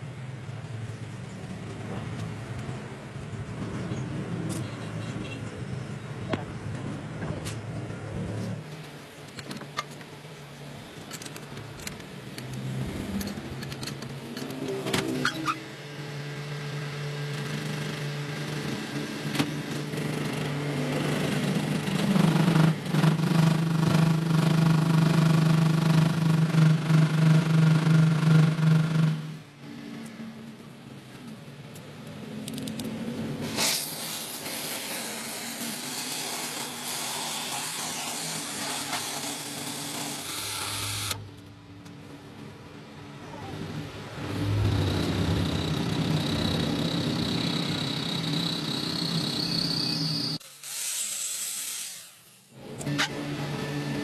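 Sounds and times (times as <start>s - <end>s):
loud steady hiss: 33.4s - 41.2s
machine motor humming: 44.1s - 49.2s.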